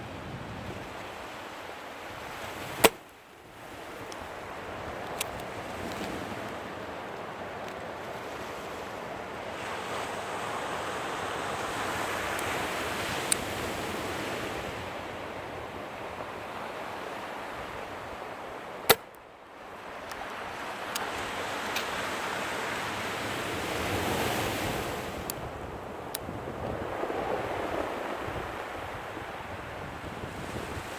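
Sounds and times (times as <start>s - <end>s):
wind on microphone: 0.0s - 1.3s, 19.8s - 30.9s
surf washing on beach: 0.0s - 30.9s.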